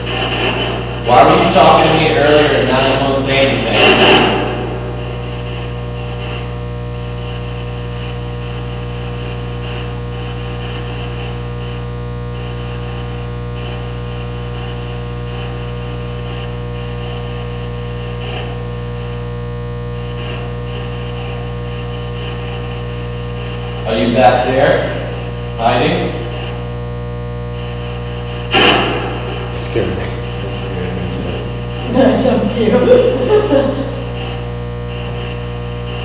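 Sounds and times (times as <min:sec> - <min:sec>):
higher buzzing tone: 0:00.0 - 0:07.5, 0:22.8 - 0:36.0
electrical hum: 0:00.0 - 0:36.0.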